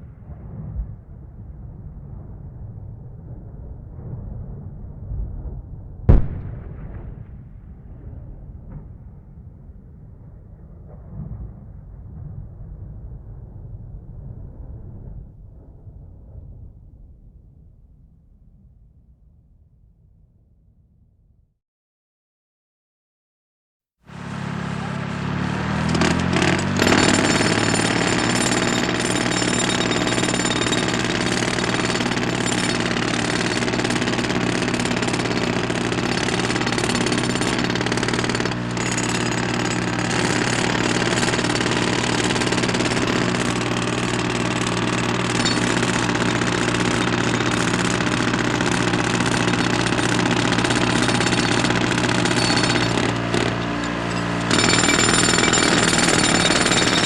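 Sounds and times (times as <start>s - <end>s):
jackhammer hammering: 24.1s - 57.0s.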